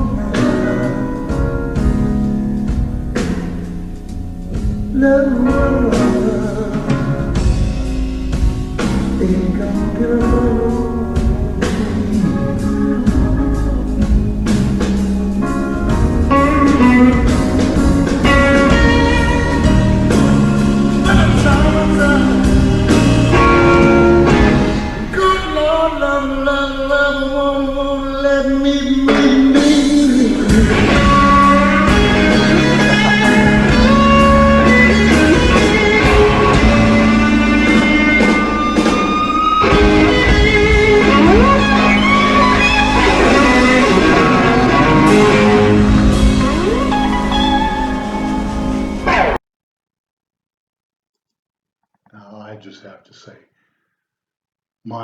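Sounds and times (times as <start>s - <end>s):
person singing: 0.0s - 1.4s, 4.9s - 7.4s, 9.1s - 14.0s, 16.4s - 45.9s
electric guitar: 0.0s - 49.4s
live blues band playing: 0.0s - 49.4s.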